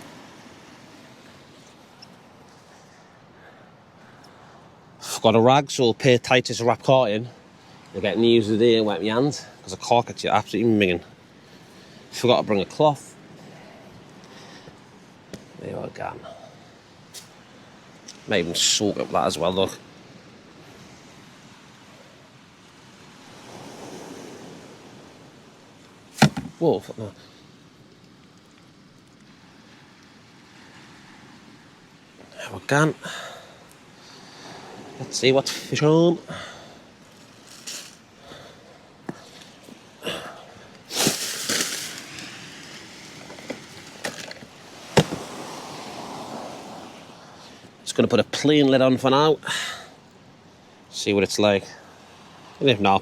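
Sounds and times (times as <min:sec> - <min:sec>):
waves washing onto rocky shore: 0:00.0 - 0:03.1, 0:06.6 - 0:47.9
fishing tackle clicks and knocks: 0:26.2 - 0:26.6, 0:43.2 - 0:45.3
rustling: 0:37.0 - 0:38.2, 0:40.8 - 0:45.7.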